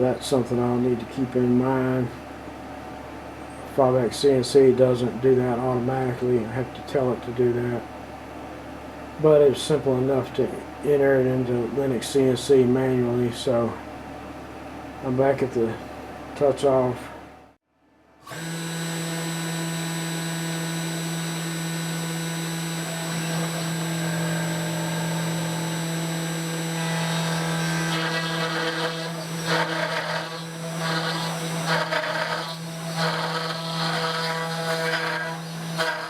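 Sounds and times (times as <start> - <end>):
router bit cutting wood: 18.3 - 36.0
router spindle whine: 18.3 - 36.0.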